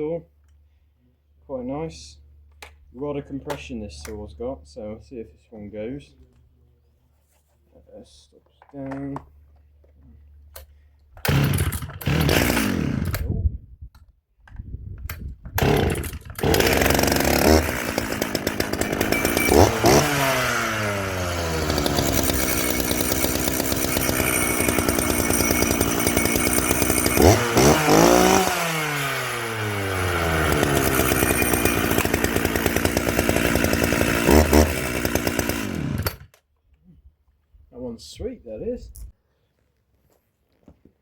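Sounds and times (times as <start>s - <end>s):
chainsaw revving and idling: 11.2s - 13.4s, 15.6s - 36.3s.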